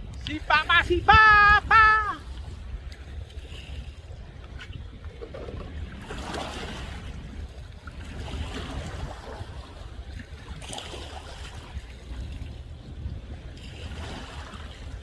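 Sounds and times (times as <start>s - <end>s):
sea waves washing in: 0.0s - 15.0s
wind rumble on microphone: 0.0s - 15.0s.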